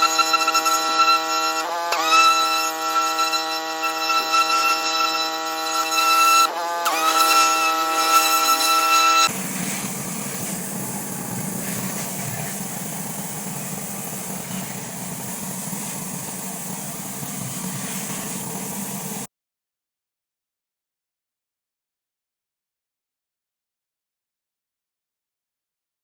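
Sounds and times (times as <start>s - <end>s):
pressure washer engine running: 6.5s - 19.3s.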